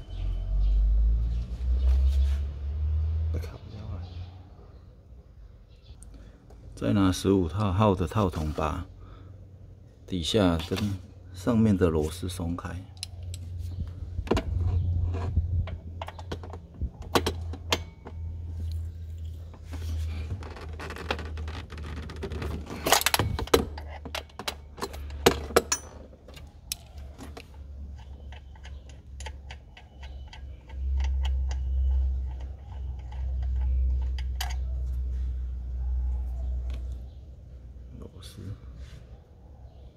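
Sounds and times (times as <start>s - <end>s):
metal tools clinking: 22.7s - 26.9s.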